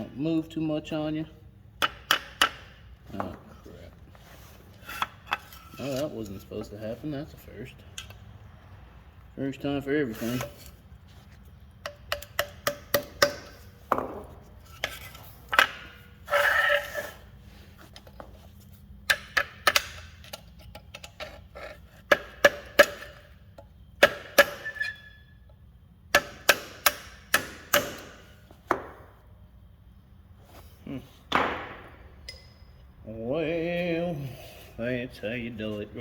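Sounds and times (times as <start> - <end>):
metal scraping: 3.7 - 7.3, 10.0 - 11.4, 16.2 - 17.8
hammer striking steel punch: 26.1 - 28.9, 31.3 - 32.6.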